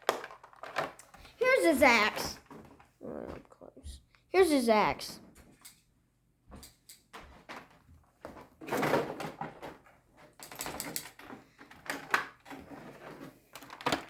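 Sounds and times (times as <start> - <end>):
packaging clicks and scrapes: 0.0 - 1.4, 7.3 - 14.0.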